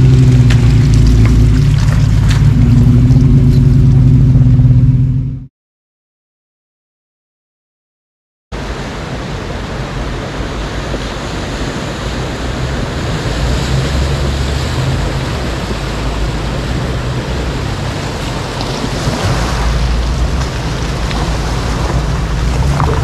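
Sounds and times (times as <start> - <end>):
truck engine running low: 0.0 - 5.5, 8.6 - 23.0
tyre noise: 12.6 - 23.0.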